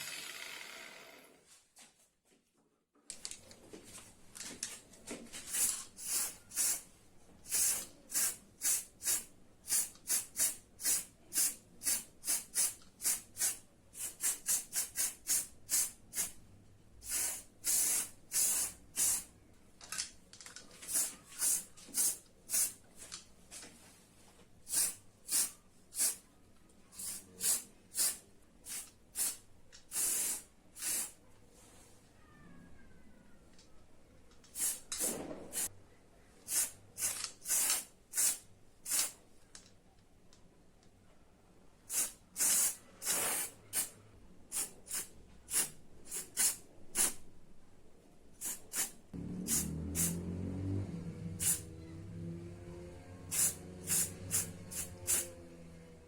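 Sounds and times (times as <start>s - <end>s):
aerosol spray can hissing: 5.5s - 6.8s, 7.5s - 16.3s, 17.0s - 19.3s, 27.0s - 31.2s, 34.6s - 35.7s, 36.5s - 39.2s, 41.9s - 43.9s, 44.5s - 47.2s, 48.4s - 50.2s, 51.4s - 51.6s, 53.3s - 55.3s.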